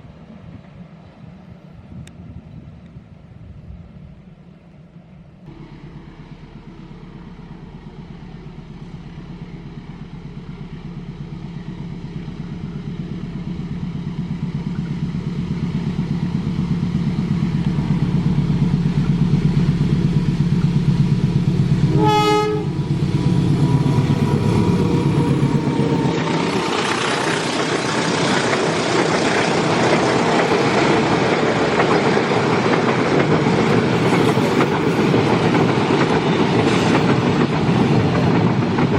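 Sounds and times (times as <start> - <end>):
train engine rumble: 0.0 - 38.9
train wheel clatter: 8.8 - 38.9
train horn blast: 21.7 - 25.0.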